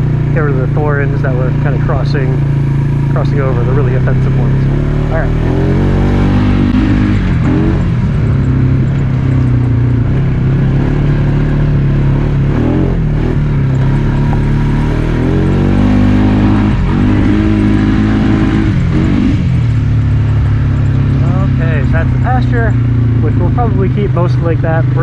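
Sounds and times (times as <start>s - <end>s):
quad bike engine revving: 0.0s - 25.0s.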